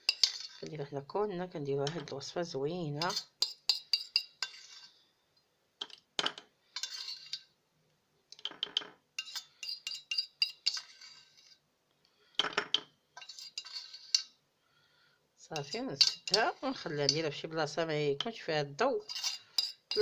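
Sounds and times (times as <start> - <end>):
metal utensils clinking: 0.0 - 0.7, 8.4 - 11.2, 15.6 - 17.4, 19.0 - 20.0.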